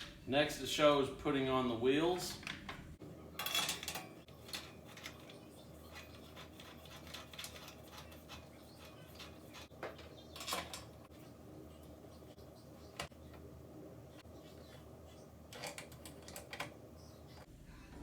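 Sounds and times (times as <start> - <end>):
hardware clicking and rattling: 2.3 - 11.1, 15.5 - 16.8.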